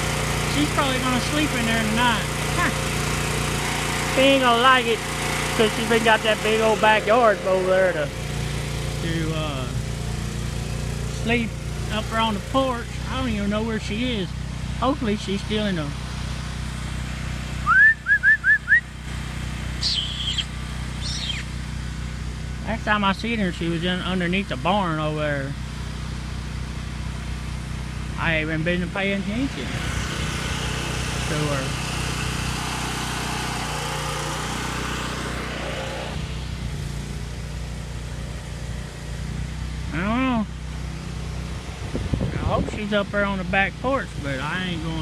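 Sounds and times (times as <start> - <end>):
small engine running: 0.0 - 45.0
person whistling to call dog: 17.6 - 18.8.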